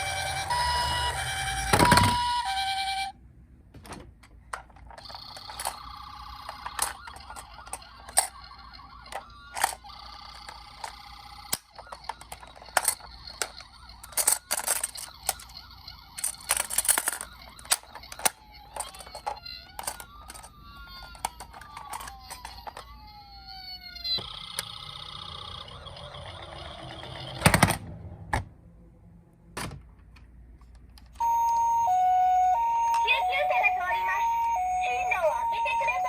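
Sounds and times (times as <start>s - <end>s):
rising-and-falling siren wail: 0.0s - 3.1s, 6.0s - 16.2s, 17.0s - 27.4s, 31.2s - 36.0s
faint electronic toy-siren tones: 0.0s - 3.2s, 5.0s - 27.4s, 31.2s - 36.0s
plastic toy cars clicking: 4.2s - 27.8s.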